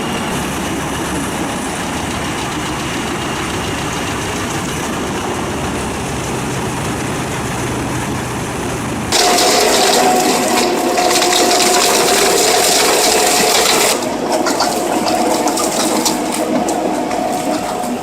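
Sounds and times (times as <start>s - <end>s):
stump shredder grinding: 9.1s - 18.0s.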